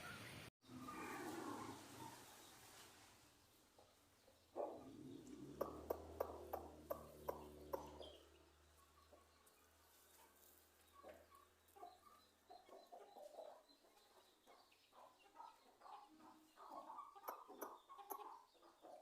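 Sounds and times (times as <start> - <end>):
chicken clucking faintly: 0.0 - 19.0.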